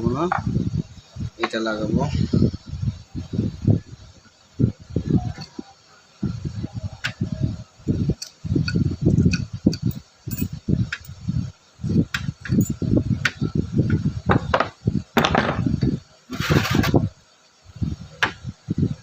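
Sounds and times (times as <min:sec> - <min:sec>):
metal parts clinking: 0:09.3 - 0:11.1.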